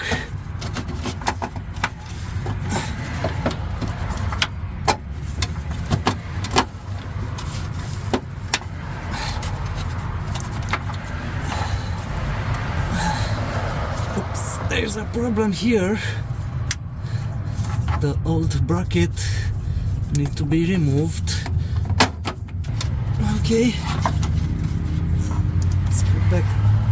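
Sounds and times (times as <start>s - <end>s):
hand tools clicking and knocking: 0.0s - 14.6s, 20.1s - 26.5s
steady low rumble: 0.0s - 26.9s.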